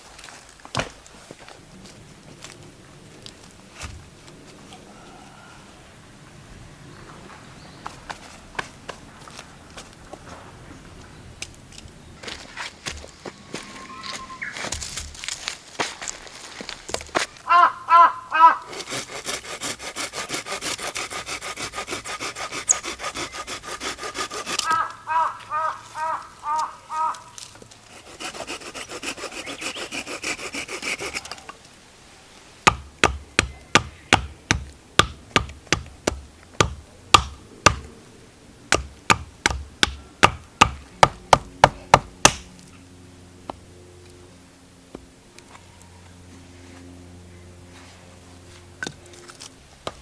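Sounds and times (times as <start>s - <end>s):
hand saw cutting wood: 18.6s - 25.0s, 27.3s - 31.6s, 32.6s - 37.9s, 38.7s - 42.5s
sharp knocks: 32.6s - 37.9s, 38.7s - 42.5s.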